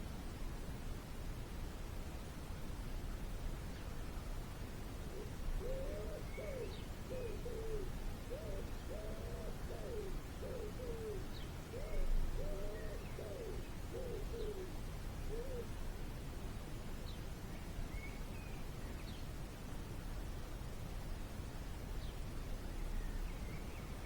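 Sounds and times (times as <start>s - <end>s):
bird hooting: 5.1s - 14.7s, 15.3s - 15.7s.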